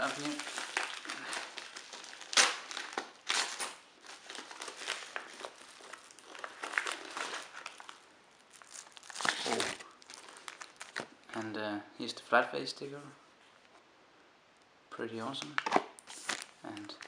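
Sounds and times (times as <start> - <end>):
package wrapping crinkling: 0.0 - 11.2, 15.6 - 17.0.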